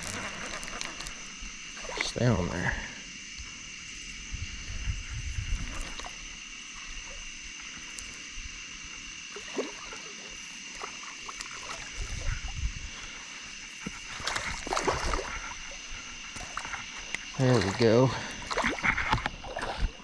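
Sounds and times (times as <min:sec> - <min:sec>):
water splashing from fish: 0:00.0 - 0:02.2, 0:05.6 - 0:07.2, 0:09.3 - 0:12.6, 0:13.9 - 0:20.0
night chorus of calling animals: 0:00.0 - 0:20.0.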